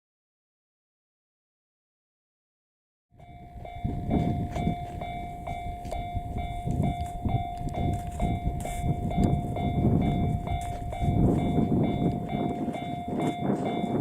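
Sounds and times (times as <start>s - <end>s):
level crossing warning bell: 3.2s - 14.0s
low rumble: 3.4s - 14.0s.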